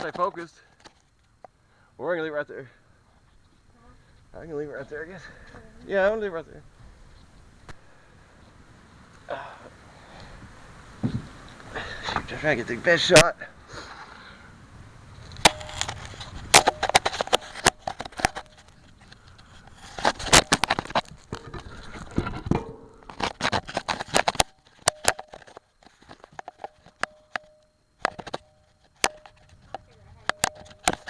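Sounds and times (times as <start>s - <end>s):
clattering clicks and knocks: 20.0s - 31.0s.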